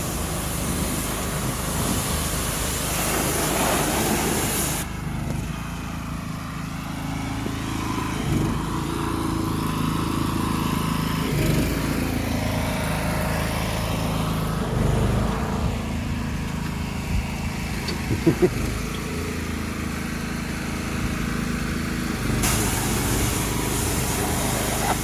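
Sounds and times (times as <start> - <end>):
pressure washer engine running: 0.0 - 25.0.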